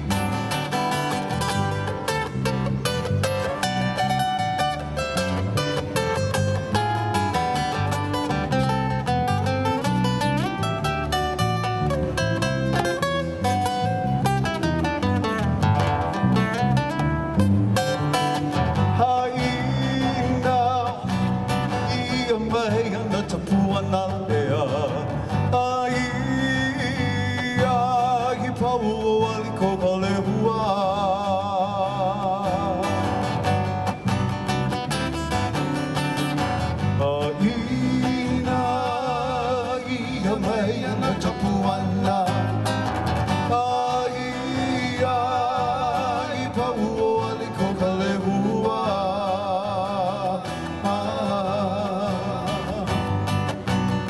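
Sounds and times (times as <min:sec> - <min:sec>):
strummed guitar: 0:00.0 - 0:54.0
person singing with vibrato: 0:18.8 - 0:33.3, 0:36.9 - 0:53.3.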